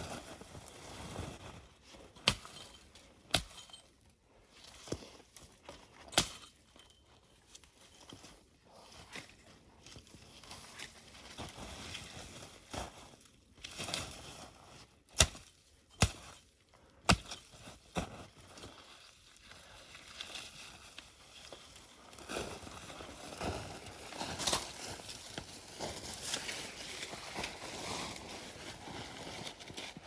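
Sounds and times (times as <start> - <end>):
sticks and branches rustling: 18.6 - 30.0.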